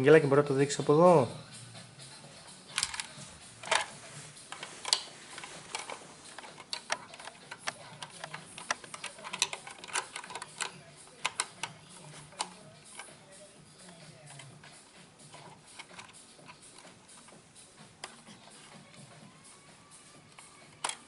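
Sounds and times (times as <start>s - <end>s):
plastic toy parts clicking: 2.7s - 3.9s, 4.5s - 13.2s, 15.3s - 17.4s, 20.3s - 21.0s.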